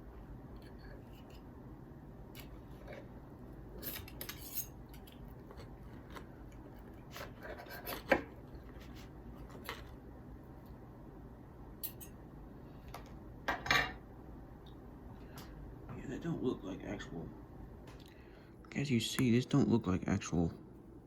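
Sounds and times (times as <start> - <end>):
cutlery scraping a tray: 7.1 - 8.2.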